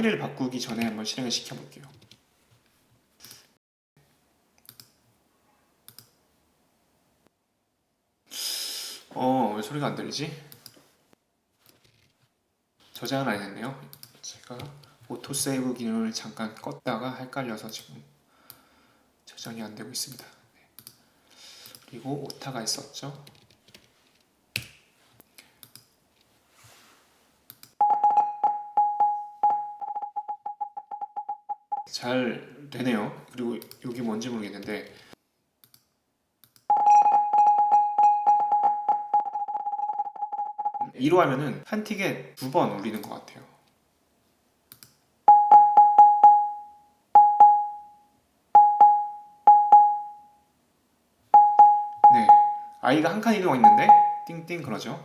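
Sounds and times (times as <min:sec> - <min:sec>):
short synthesized beeps: 0:53.6 - 0:54.3.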